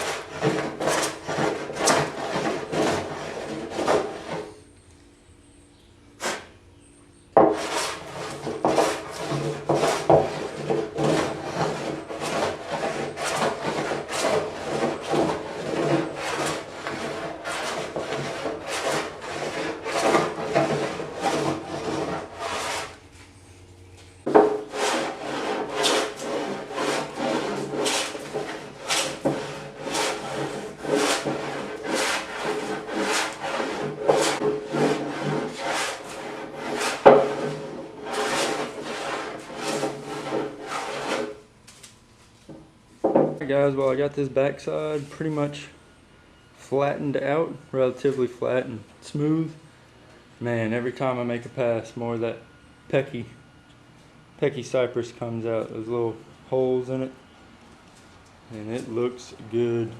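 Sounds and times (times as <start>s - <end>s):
hand plane shaving wood: 0.0s - 4.5s, 6.2s - 6.5s, 7.4s - 23.0s, 24.3s - 41.4s.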